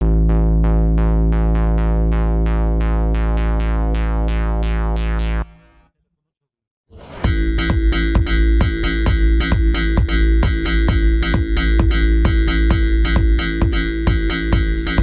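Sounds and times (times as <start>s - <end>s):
low bass note: 0.0s - 5.5s.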